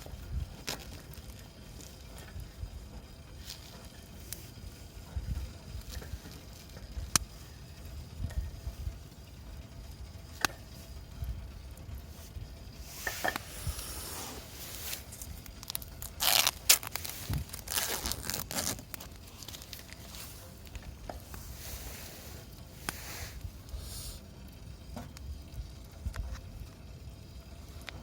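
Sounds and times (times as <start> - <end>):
rustling and scraping handling noises: 3.3 - 7.0, 12.0 - 24.2.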